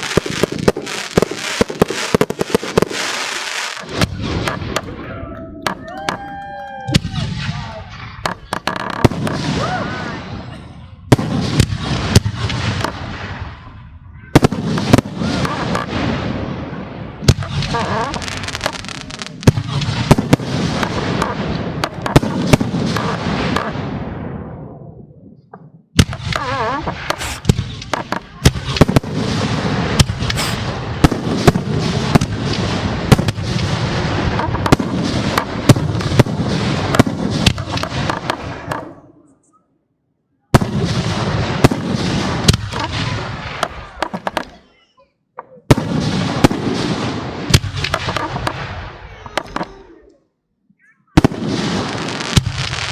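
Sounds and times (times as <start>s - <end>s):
fireworks booming: 0.0s - 39.1s, 40.5s - 44.8s, 45.6s - 50.0s, 51.2s - 52.9s
fireworks crackling and rumbling: 0.0s - 39.1s, 40.5s - 44.8s, 45.7s - 50.0s, 51.2s - 52.9s
loud bangs of shells bursting: 17.2s - 24.0s, 26.0s - 38.9s, 40.6s - 44.5s, 45.7s - 49.6s.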